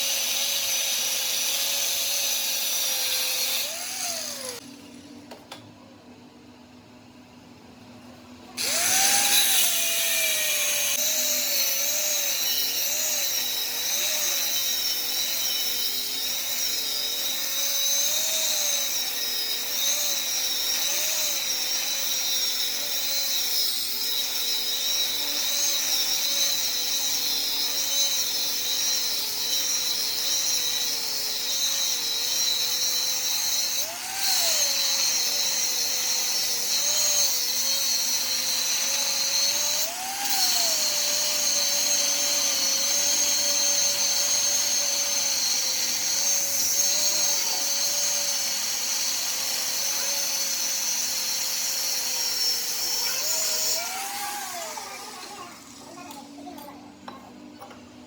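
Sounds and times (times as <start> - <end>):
power tool whine: 0.0 - 5.3, 8.6 - 56.6.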